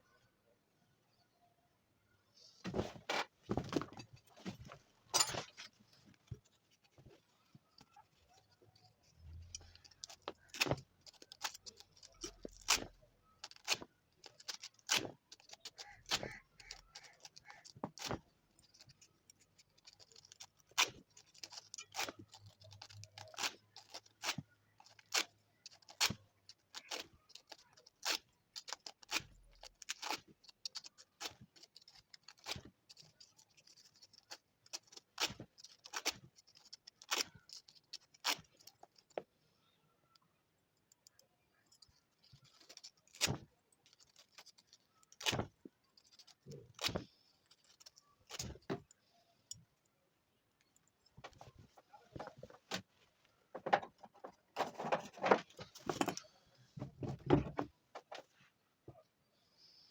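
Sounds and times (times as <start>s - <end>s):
metal parts clicking and tapping: 3.6s - 7.0s, 7.7s - 39.3s, 40.8s - 49.6s, 53.6s - 56.3s.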